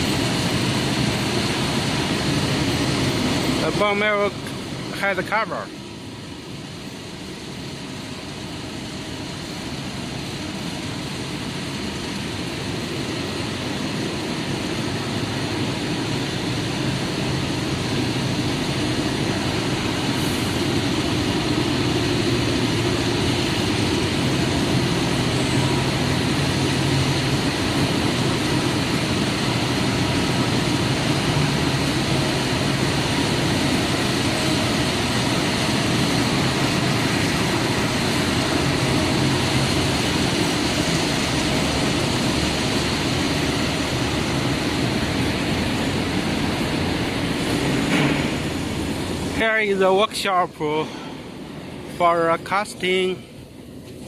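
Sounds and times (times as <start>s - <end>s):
industrial machinery noise: 0.0s - 54.0s.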